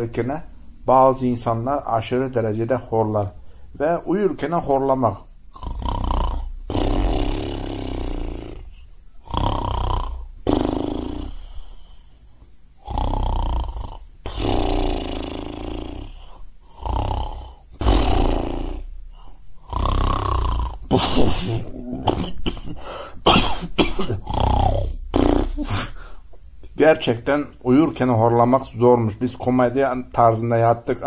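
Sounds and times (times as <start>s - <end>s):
man imitating snoring: 4.7s - 11.9s, 12.8s - 26.1s.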